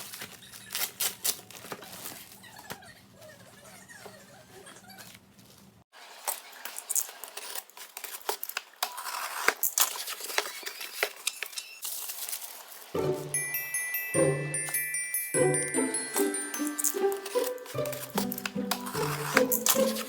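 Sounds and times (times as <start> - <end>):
packaging rustling: 0.0 - 2.5, 7.0 - 13.0
bell-like background music: 13.0 - 20.0
clicks and taps handling objects: 16.1 - 20.0.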